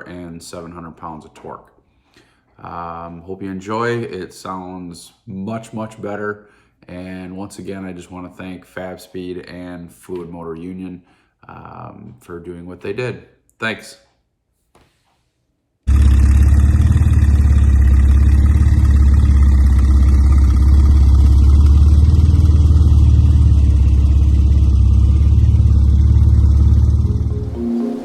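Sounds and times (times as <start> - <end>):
car exhaust deep drone: 15.9 - 27.6.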